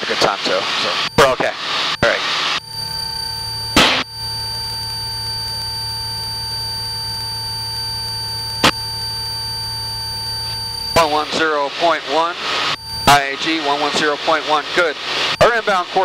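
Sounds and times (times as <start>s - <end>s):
steady electronic tone: 0.3s - 15.9s.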